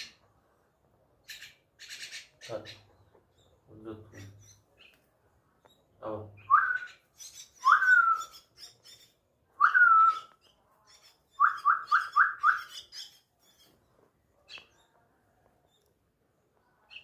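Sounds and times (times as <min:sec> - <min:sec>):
myna whistling calls: 0:06.4 - 0:13.7.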